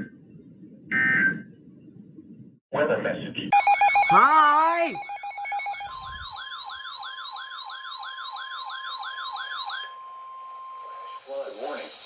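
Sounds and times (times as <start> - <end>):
falling yelp alert tone: 3.6 - 5.9
steady single-pitch tone: 3.6 - 6.3.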